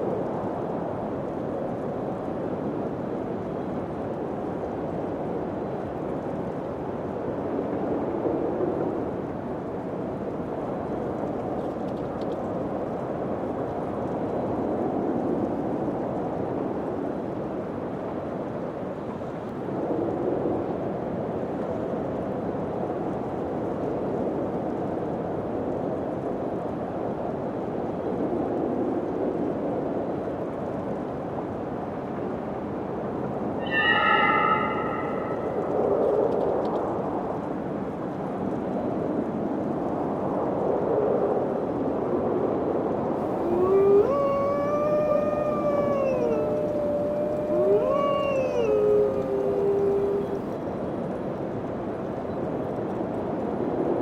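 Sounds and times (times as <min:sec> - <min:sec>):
wind gusting: 0:43.2 - 0:50.5.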